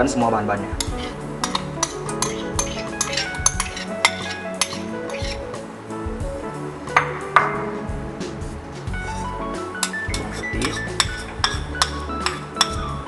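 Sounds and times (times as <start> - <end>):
background music: 0.0 - 13.0
utensils clinking against bowl: 0.8 - 5.4, 9.8 - 12.8.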